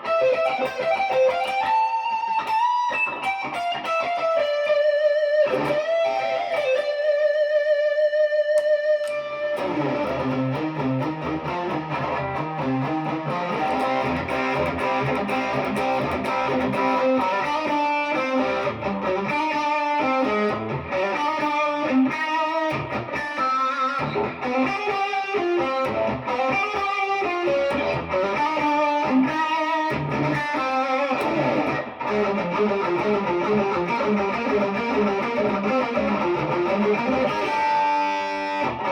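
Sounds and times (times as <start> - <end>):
electric guitar playing: 0.0 - 38.9.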